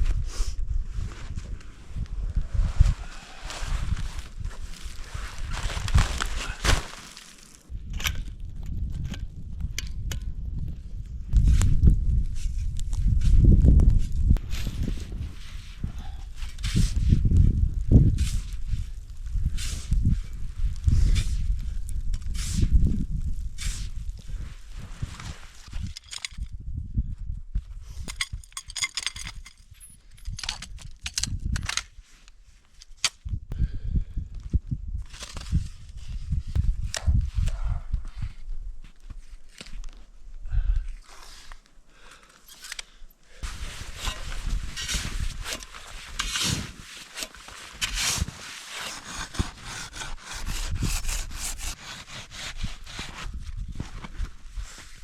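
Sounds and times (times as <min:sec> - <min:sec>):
snow shovel crunching packed snow: 0:02.5 - 0:07.7, 0:43.4 - 0:55.0.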